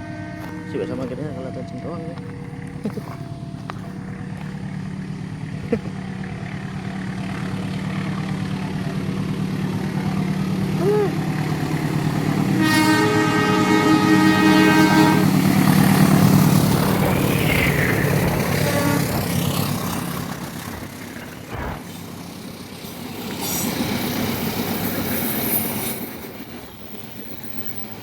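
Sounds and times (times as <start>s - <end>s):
multi-tone train horn blast: 0.0s - 2.2s, 11.6s - 20.6s
diesel train engine drone: 0.0s - 28.0s.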